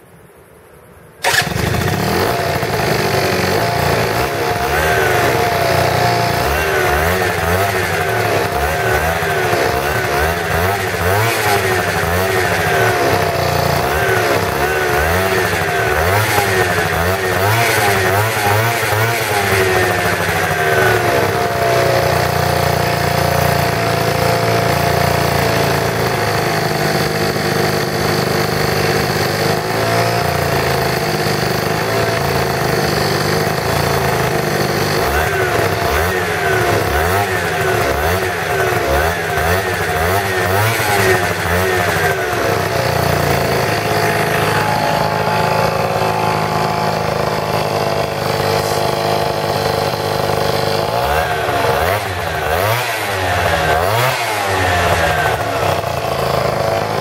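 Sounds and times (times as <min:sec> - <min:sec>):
scooter engine revving: 0:01.2 - 0:57.0.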